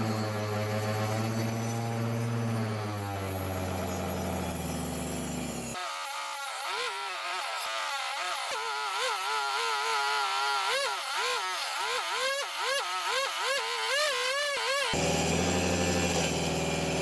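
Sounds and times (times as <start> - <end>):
table saw whining: 0.0 - 5.8, 15.0 - 17.0.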